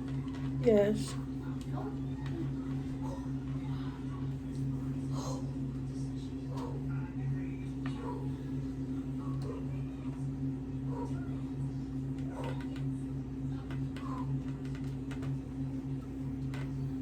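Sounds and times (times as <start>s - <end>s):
steady low hum: 0.0s - 17.0s
faint clicks and taps: 13.6s - 15.5s.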